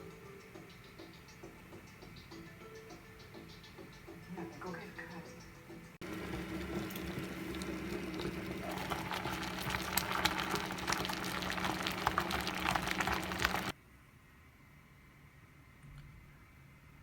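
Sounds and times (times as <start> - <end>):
bubbles crackling in heating water: 6.0 - 13.7
steady hum: 6.0 - 13.7.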